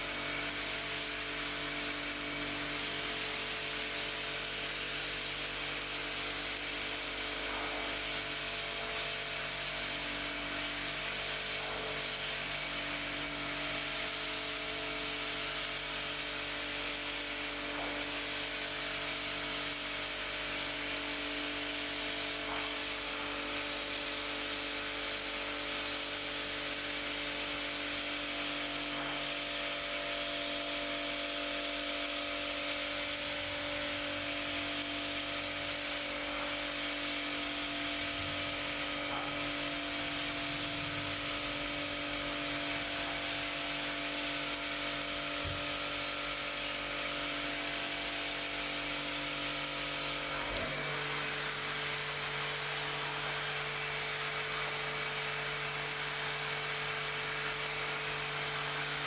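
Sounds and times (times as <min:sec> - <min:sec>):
water spraying onto rug: 0:31.2 - 0:59.0.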